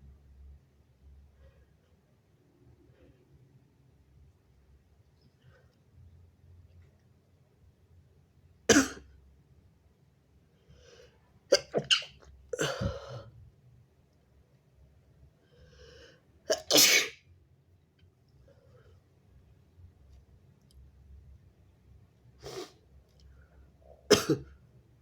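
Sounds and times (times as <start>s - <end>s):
person sneezing: 11.5s - 13.3s, 16.5s - 17.2s
faint in-breath: 15.4s - 16.3s.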